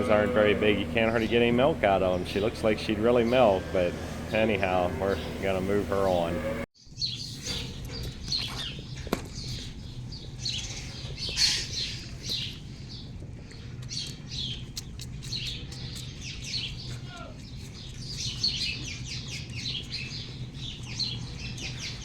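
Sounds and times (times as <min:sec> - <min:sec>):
low steady hum: 0:00.0 - 0:06.7
small birds chirping: 0:00.0 - 0:22.0.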